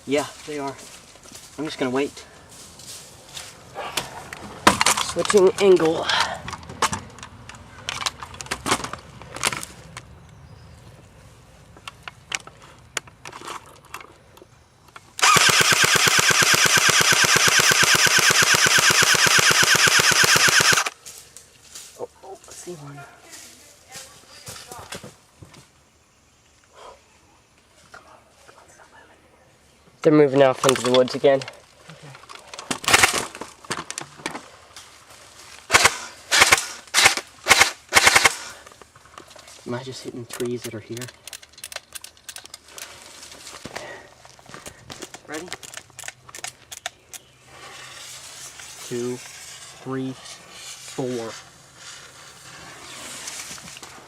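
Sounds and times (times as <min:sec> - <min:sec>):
airsoft gun full-auto burst: 0:15.2 - 0:20.9, 0:35.7 - 0:38.5.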